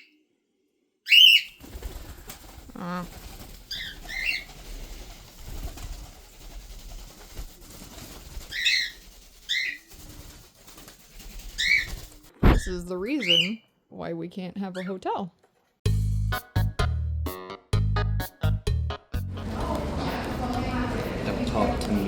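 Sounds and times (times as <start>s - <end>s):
cockatiels chirping: 1.1s - 1.6s, 3.7s - 4.5s, 8.5s - 9.8s, 11.6s - 13.6s.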